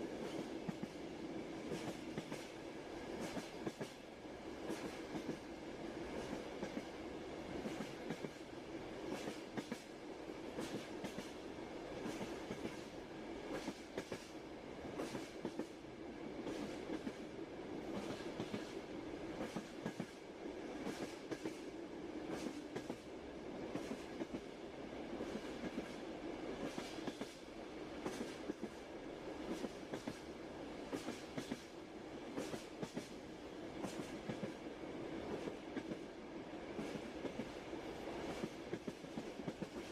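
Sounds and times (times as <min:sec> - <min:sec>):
railway carriage rumble: 0:00.0 - 0:39.9
train wheels clacking: 0:00.2 - 0:01.0, 0:01.7 - 0:02.6, 0:03.2 - 0:04.0, 0:04.7 - 0:05.5, 0:07.6 - 0:08.4, 0:09.1 - 0:09.9, 0:10.6 - 0:11.4, 0:12.0 - 0:12.9, 0:13.5 - 0:14.3, 0:15.0 - 0:15.8, 0:16.4 - 0:17.2, 0:17.9 - 0:18.8, 0:19.4 - 0:20.2, 0:20.8 - 0:21.6, 0:22.3 - 0:23.1, 0:23.7 - 0:24.5, 0:26.6 - 0:27.4, 0:28.0 - 0:28.8, 0:29.4 - 0:30.3, 0:30.9 - 0:33.2, 0:33.8 - 0:34.6, 0:38.2 - 0:39.9.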